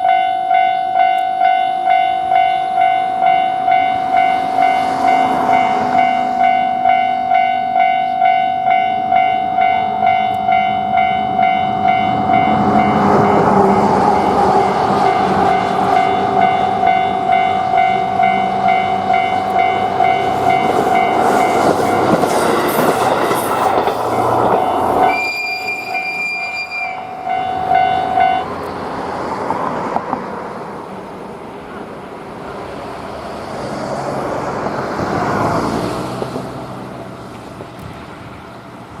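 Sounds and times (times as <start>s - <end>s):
level crossing bell ringing: 0.0s - 13.4s, 14.2s - 21.6s, 24.6s - 28.5s
train running noise: 0.0s - 39.0s
train horn: 24.6s - 28.5s.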